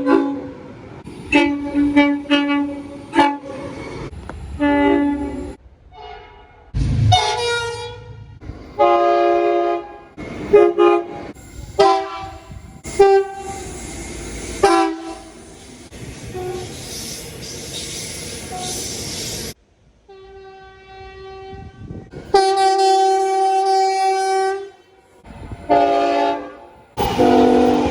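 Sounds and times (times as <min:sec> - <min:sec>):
train running noise: 0:00.0 - 0:06.0, 0:06.8 - 0:20.4, 0:21.0 - 0:27.9
locomotive air horn blasts: 0:01.3 - 0:03.8, 0:04.6 - 0:13.8, 0:14.6 - 0:15.4, 0:16.3 - 0:16.8, 0:20.1 - 0:24.9, 0:25.6 - 0:27.9.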